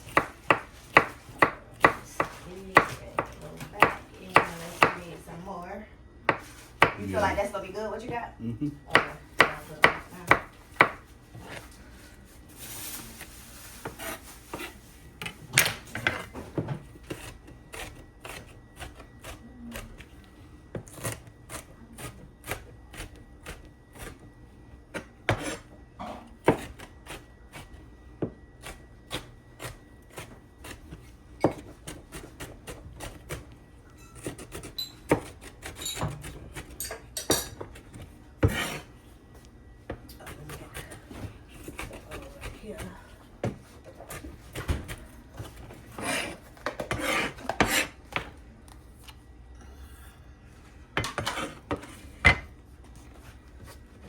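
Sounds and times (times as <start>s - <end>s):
knife chopping on wooden board: 0.0s - 5.1s, 6.3s - 7.3s, 8.9s - 11.6s, 24.9s - 25.7s, 26.4s - 33.6s, 34.2s - 36.8s, 37.6s - 38.9s, 39.9s - 48.3s.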